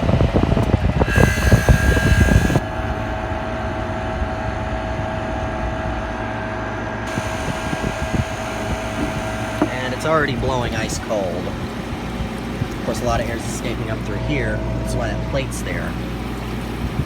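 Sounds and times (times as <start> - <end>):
air conditioner hum: 0.0 - 17.0
compressor clatter: 0.4 - 3.4, 7.1 - 17.0.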